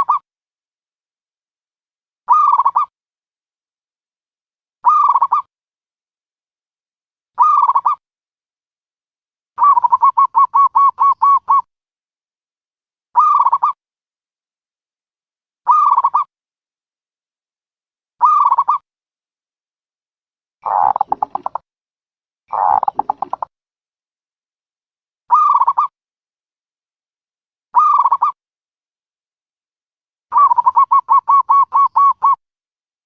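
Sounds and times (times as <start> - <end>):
dove call: 9.6 - 11.7, 20.6 - 21.6, 22.5 - 23.4, 30.3 - 32.4.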